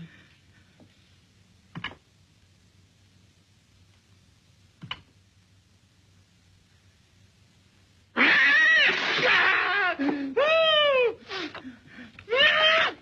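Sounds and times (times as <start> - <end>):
cat yowling and meowing: 8.2 - 11.2.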